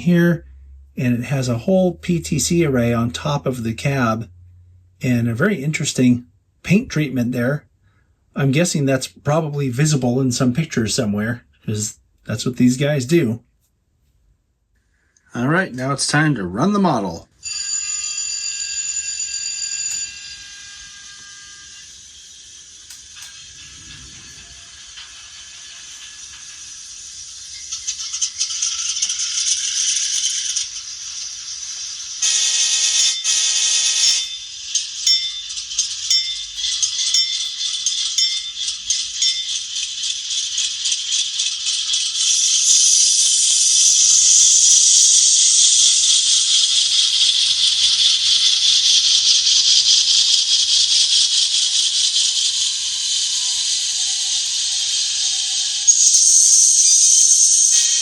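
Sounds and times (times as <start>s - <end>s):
tinny model locomotive engine rattle: 1.0s - 4.2s, 8.4s - 13.1s, 17.4s - 58.0s.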